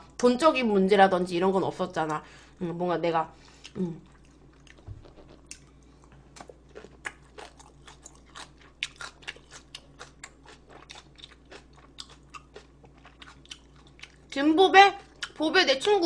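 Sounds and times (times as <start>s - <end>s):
person chewing food: 3.6s - 14.4s, 15.0s - 15.4s.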